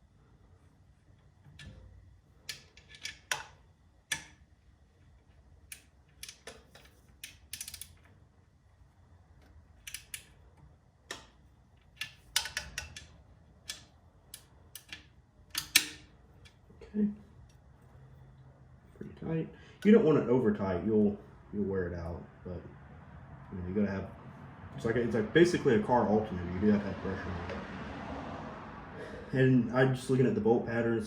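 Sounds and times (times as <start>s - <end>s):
metallic clicks and taps of tools: 2.4s - 4.4s, 5.7s - 8.1s, 9.4s - 16.6s.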